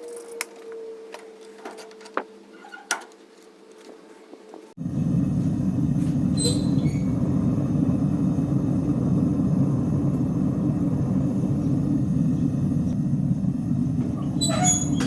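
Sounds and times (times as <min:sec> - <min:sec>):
workshop machine roaring: 0:03.7 - 0:15.0.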